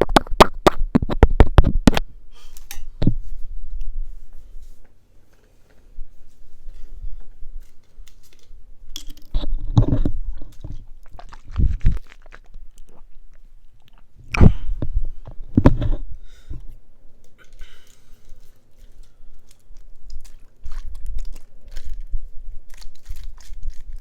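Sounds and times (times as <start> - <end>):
close-up crunching: 7.6 - 14.8, 16.6 - 24.0.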